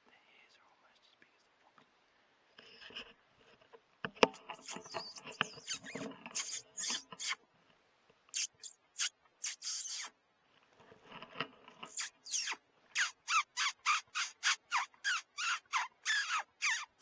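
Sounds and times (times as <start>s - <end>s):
predator call squeals: 4.4s - 7.4s, 8.4s - 10.1s, 11.9s - 17.0s.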